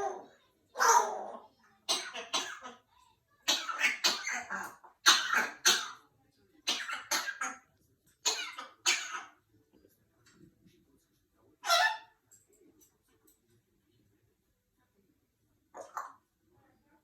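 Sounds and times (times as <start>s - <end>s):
parrot coughing: 0.8s - 6.0s, 6.6s - 7.6s, 8.2s - 9.4s.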